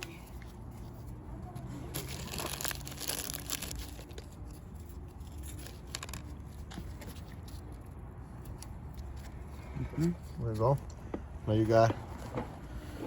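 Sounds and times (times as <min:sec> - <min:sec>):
packaging rustling and crinkling: 0:01.8 - 0:07.9.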